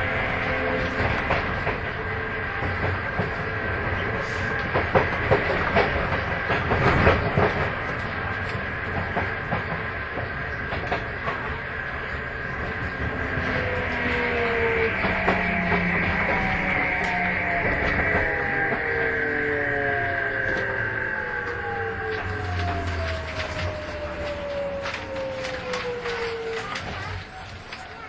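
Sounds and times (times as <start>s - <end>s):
train rumble: 0.0s - 28.0s
train wheels clicking over rail joints: 1.0s - 19.0s.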